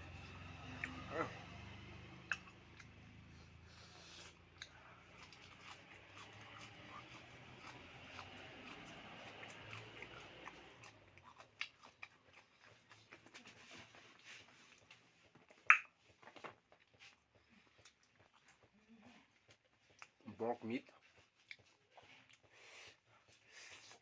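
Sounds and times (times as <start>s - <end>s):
chewing and biting food: 0.0s - 24.0s
wet mouth clicks and smacks: 2.2s - 3.0s, 14.8s - 16.5s.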